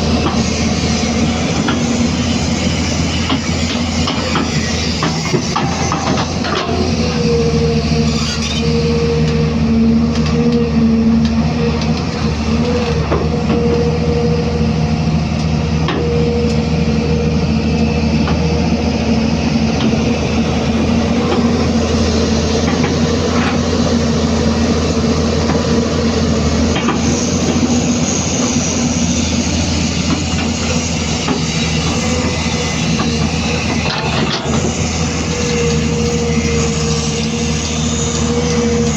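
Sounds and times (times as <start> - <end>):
excavator diesel engine running: 0.0 - 38.9
knocks and clanks: 3.2 - 6.9.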